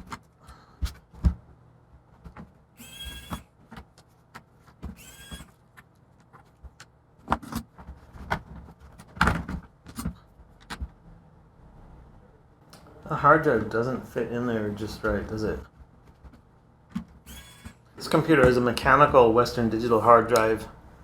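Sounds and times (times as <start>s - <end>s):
plastic parts clicking and knocking: 2.1s - 11.0s
short squeaky whirs: 2.8s - 3.5s, 4.9s - 5.6s, 17.2s - 17.8s.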